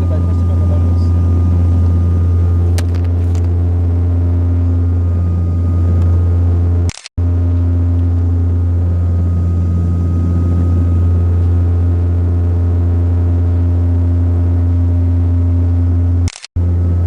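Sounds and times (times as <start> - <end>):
deep propeller hum: 0.0 - 17.0
high engine whine: 0.0 - 17.0.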